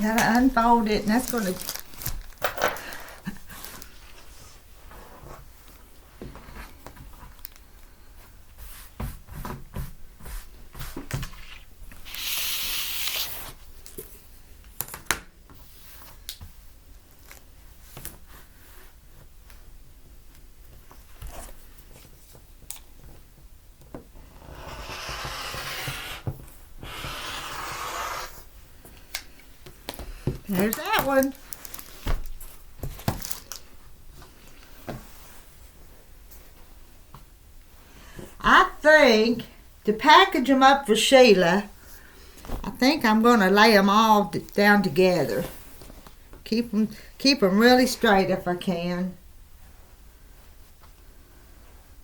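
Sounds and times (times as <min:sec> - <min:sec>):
cloth rubbing and rustling: 0:08.0 - 0:13.8, 0:33.7 - 0:37.1.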